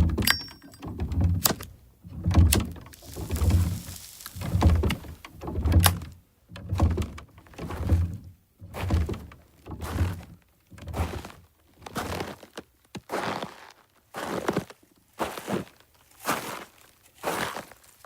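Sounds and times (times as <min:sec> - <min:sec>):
heavy thuds with crisp clicks: 0:00.0 - 0:11.2.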